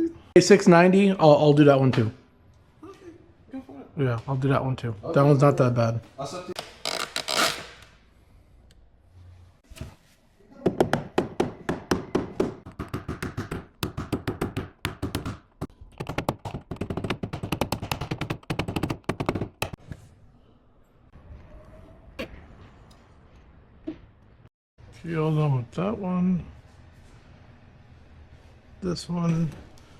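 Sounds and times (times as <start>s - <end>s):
rapid metallic tapping on car panel: 10.8s - 19.8s.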